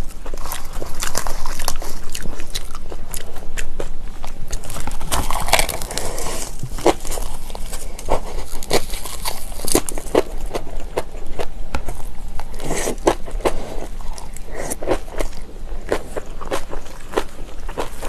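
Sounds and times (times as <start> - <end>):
crunchy chewing: 0.0 - 18.0.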